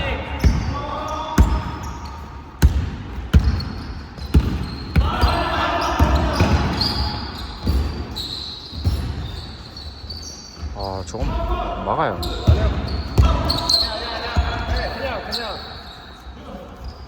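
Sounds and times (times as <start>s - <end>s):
basketball bouncing on hardwood floor: 2.6s - 5.4s, 12.2s - 13.6s.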